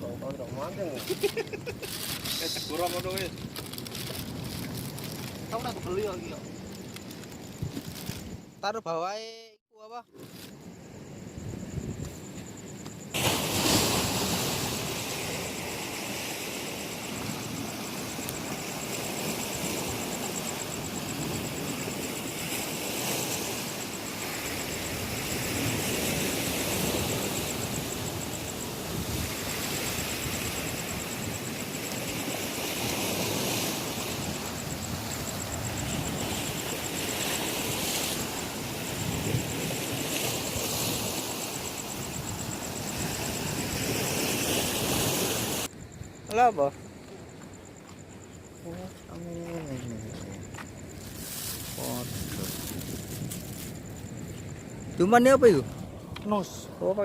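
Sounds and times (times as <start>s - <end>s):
wind on microphone: 7.4s - 8.6s, 13.4s - 45.7s, 49.8s - 56.8s
rough sea waves washing: 12.5s - 45.7s.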